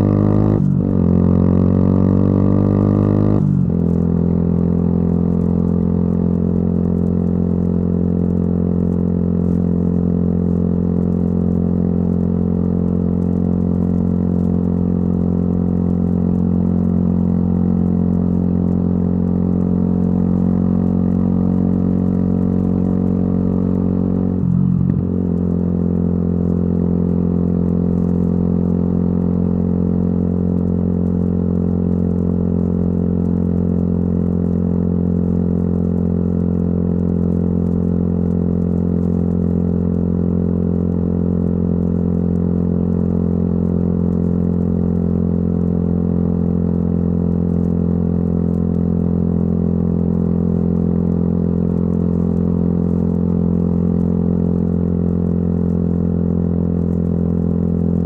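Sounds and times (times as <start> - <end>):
motorcycle engine exhaust note: 21.5 - 27.9.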